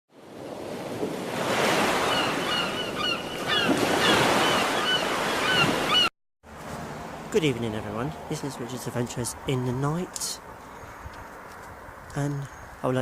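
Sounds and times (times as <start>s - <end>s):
surf washing on a beach: 0.2s - 6.0s.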